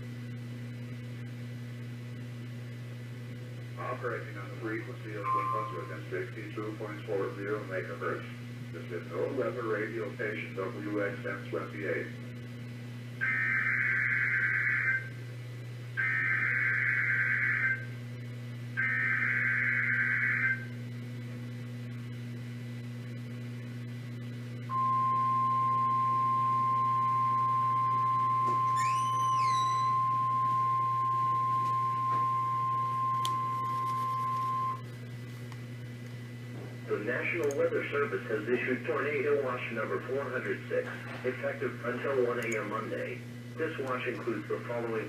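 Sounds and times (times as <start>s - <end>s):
steady warning alarm tone: 4.7s - 6.6s, 13.2s - 15.2s, 16.0s - 18.0s, 18.8s - 20.7s, 24.7s - 34.8s
low hum: 24.6s - 38.5s
digital header tone bursts: 28.7s - 30.4s.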